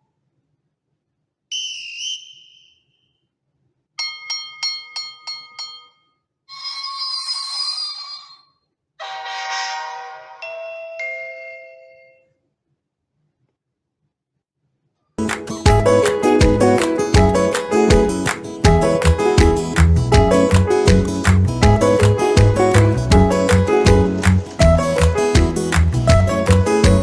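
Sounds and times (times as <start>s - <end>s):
bell-like dings: 4.0s - 6.2s, 10.3s - 12.3s
chord-like horn chime: 9.0s - 11.0s.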